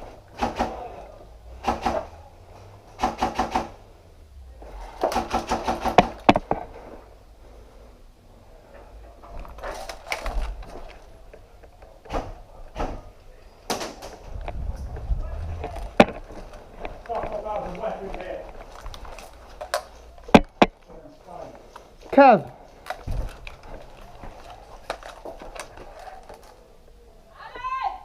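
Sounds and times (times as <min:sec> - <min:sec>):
airsoft guns firing: 0:00.3 - 0:01.0, 0:01.6 - 0:02.2, 0:03.0 - 0:03.8, 0:05.0 - 0:06.4.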